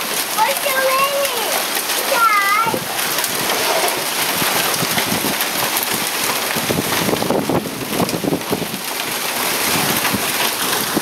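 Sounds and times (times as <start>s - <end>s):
heavy rain and hail: 0.0s - 11.0s
wind buffeting microphone: 2.4s - 11.0s.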